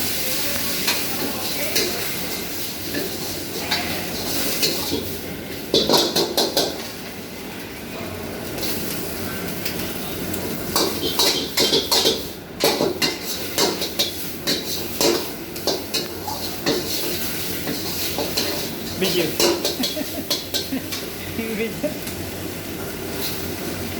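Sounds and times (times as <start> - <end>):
metal utensil clanking on a pan: 0.8 - 7.0, 10.7 - 21.1.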